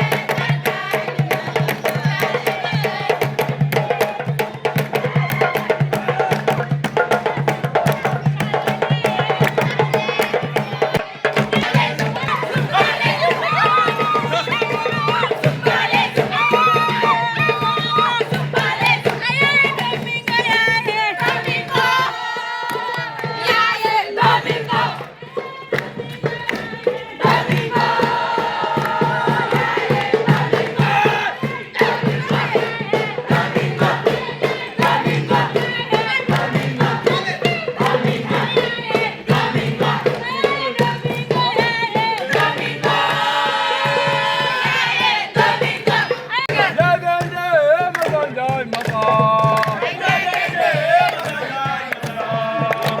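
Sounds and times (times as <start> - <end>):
group singing and chanting: 0.0 - 53.0.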